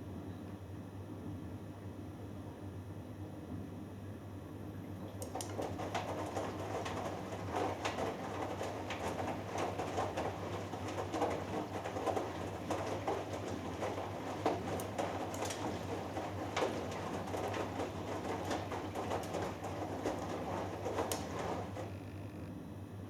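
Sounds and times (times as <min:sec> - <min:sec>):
washing machine motor hum: 0:04.6 - 0:23.0
washing machine drum sloshing: 0:05.0 - 0:22.6.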